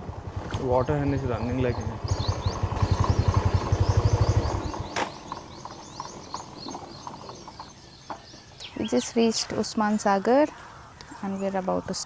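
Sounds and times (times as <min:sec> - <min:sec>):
motorbike engine idling: 0:00.0 - 0:11.9
small birds chirping: 0:00.6 - 0:12.0.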